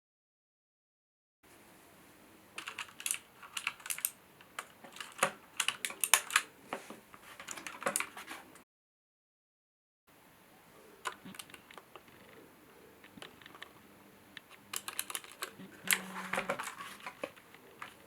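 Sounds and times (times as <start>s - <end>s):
mechanical keyboard key clicks: 2.6s - 6.5s, 14.4s - 18.0s.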